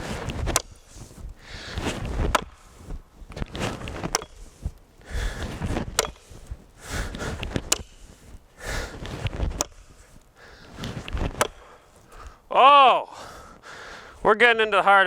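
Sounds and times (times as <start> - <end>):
heavy breathing: 0.6 - 2.9, 4.4 - 12.5, 13.1 - 14.3
axe chopping log: 2.3 - 2.6, 11.2 - 11.8.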